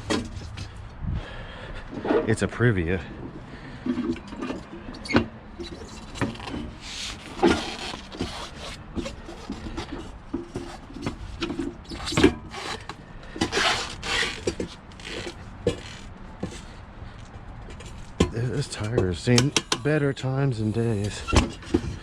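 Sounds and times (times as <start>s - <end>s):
pry bar scraping tire on rim: 3.9s - 16.8s, 17.6s - 22.0s
sharp metal knocks: 18.2s - 20.0s.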